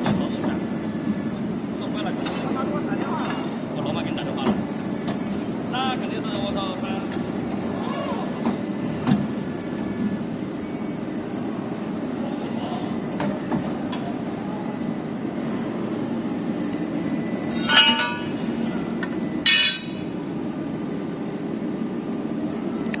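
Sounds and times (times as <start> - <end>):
loud metallic squeals: 17.4 - 20.1
tube bending machine drone: 17.4 - 20.2.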